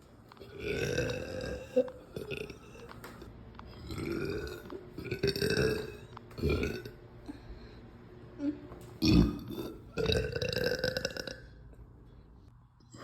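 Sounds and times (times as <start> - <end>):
woman belching: 0.5 - 2.9, 3.9 - 7.0, 9.0 - 11.5.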